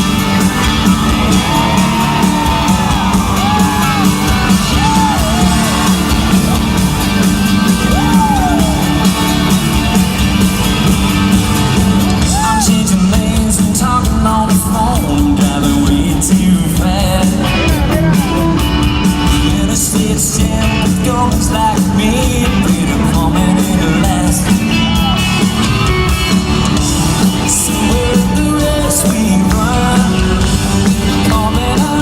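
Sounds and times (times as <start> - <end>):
person singing: 0.0 - 9.5, 12.1 - 25.4, 27.1 - 32.0
crowd whooping and shouting: 0.0 - 13.2, 24.4 - 31.9
live country-rock band: 0.0 - 32.0.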